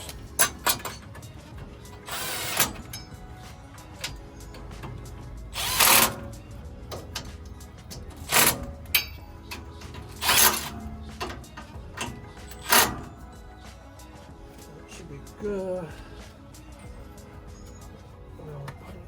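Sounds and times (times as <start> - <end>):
power tool running down bolts: 0.0 - 13.3.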